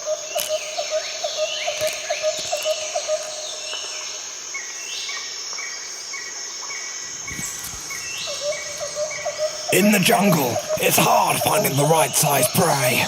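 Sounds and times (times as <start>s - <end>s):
bird calls: 0.0s - 13.0s
high insect drone: 0.0s - 13.0s
low chirps: 7.2s - 13.0s.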